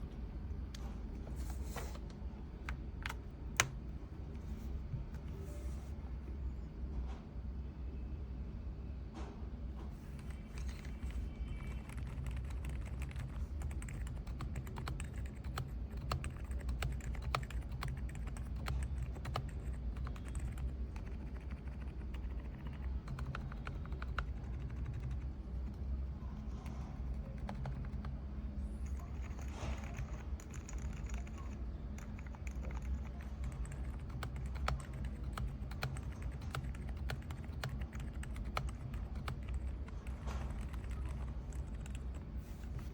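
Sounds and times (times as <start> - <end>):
mechanical keyboard typing: 2.6 - 3.8, 10.2 - 28.2, 28.8 - 42.8.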